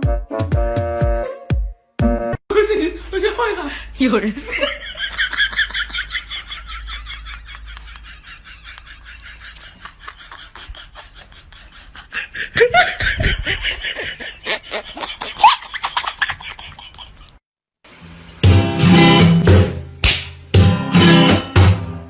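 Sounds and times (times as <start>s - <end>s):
people laughing: 2.5s - 3.8s, 4.4s - 17.4s.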